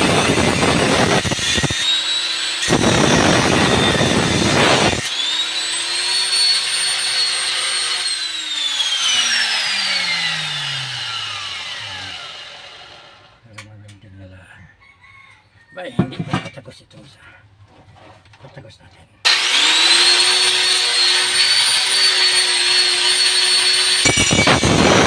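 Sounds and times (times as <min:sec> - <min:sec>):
grinder cutting metal: 0:00.0 - 0:13.4, 0:19.3 - 0:25.0
grinder high whine: 0:00.0 - 0:13.4, 0:19.3 - 0:25.0
grinder winding down: 0:00.0 - 0:13.4, 0:19.3 - 0:25.0.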